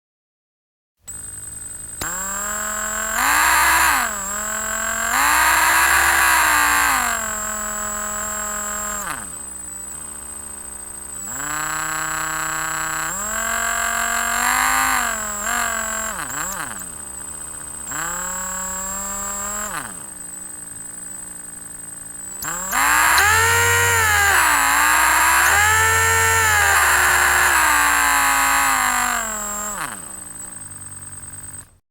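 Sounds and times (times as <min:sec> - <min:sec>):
electric drill motor whining: 0:01.1 - 0:31.8.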